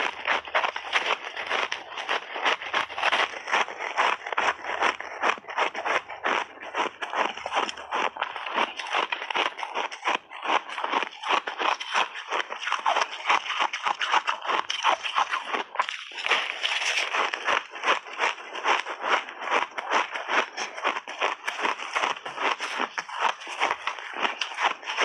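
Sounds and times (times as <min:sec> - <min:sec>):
crunching frozen ice balls: 0:00.0 - 0:25.0.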